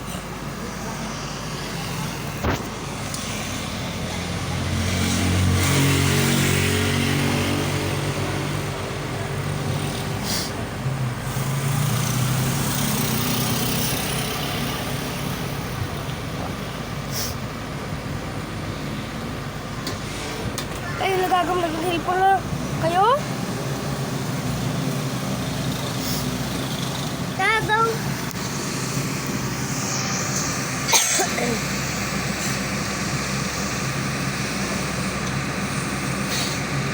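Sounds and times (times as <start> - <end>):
vehicle engine revving: 0.0 - 16.6.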